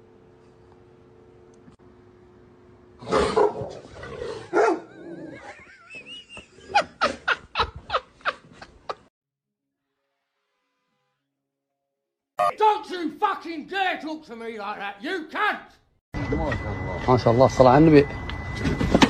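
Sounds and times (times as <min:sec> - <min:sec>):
dog barking: 0:03.0 - 0:03.9, 0:04.5 - 0:05.0.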